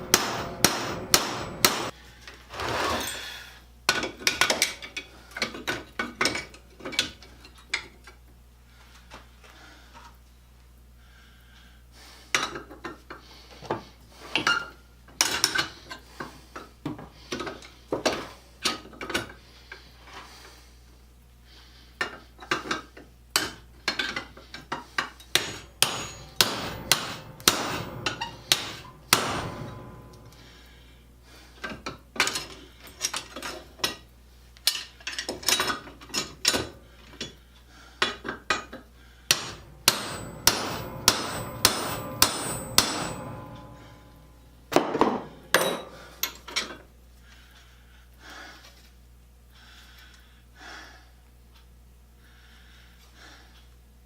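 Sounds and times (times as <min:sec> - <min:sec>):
hammer striking steel rivet: 0:00.0 - 0:02.0, 0:25.3 - 0:30.8, 0:39.3 - 0:46.4.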